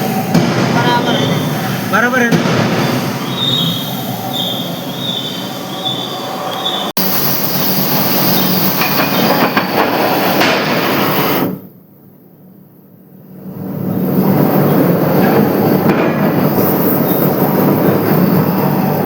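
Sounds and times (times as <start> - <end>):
high squeal: 0.0 - 9.4, 16.4 - 19.0.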